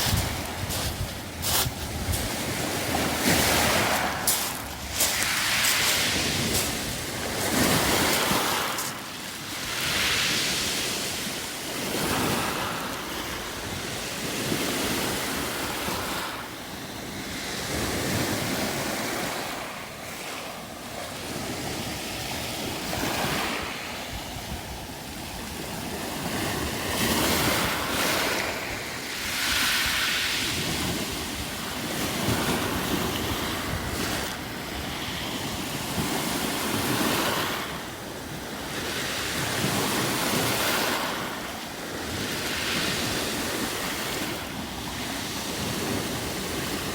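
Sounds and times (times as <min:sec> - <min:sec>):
wind buffeting microphone: 0:00.0 - 0:08.9
waves rattling pebbles: 0:00.0 - 0:16.4.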